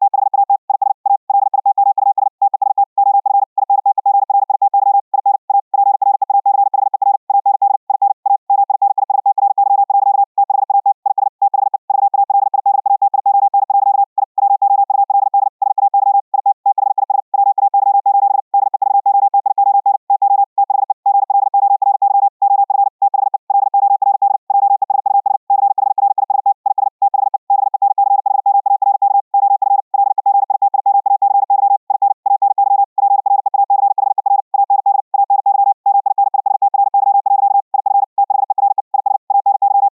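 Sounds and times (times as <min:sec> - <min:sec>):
morse code tone: 0:32.4 - 0:39.9.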